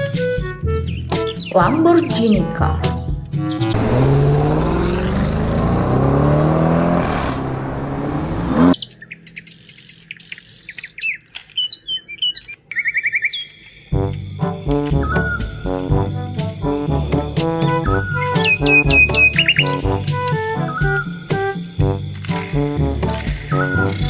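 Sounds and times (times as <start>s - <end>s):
high chirps and whistling tweets: 0.0s - 2.4s, 3.0s - 3.8s, 8.8s - 13.8s, 17.9s - 20.0s
sports car engine revving: 3.6s - 8.8s.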